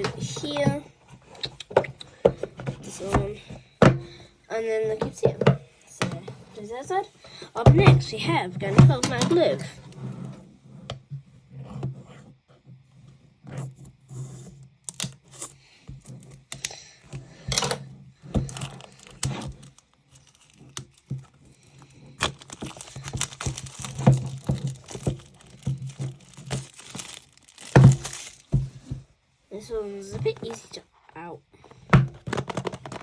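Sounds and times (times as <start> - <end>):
plastic wrapping crinkling: 18.4 - 29.0.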